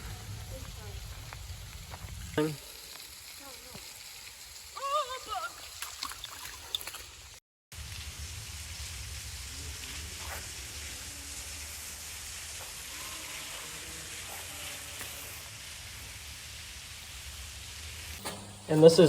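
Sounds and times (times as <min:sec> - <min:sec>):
running water hiss: 0:00.0 - 0:19.0.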